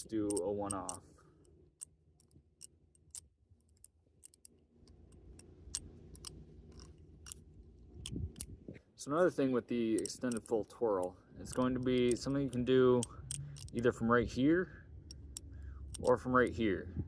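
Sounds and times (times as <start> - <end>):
butterfly knife clicking: 0.0 - 8.5, 9.9 - 13.8, 15.0 - 16.2
faint low rumble: 0.0 - 17.0.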